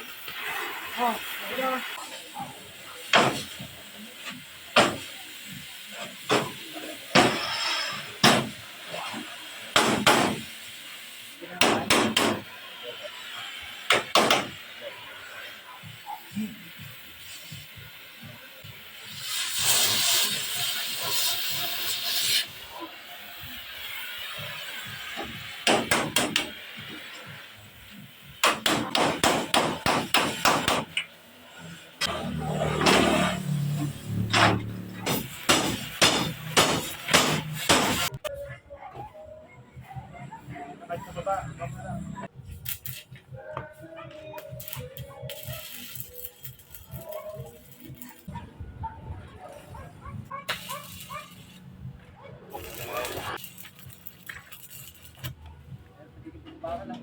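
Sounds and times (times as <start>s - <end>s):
hammer striking metal truck bed: 8.2s - 8.6s, 9.8s - 10.5s, 28.4s - 31.0s, 34.3s - 38.0s.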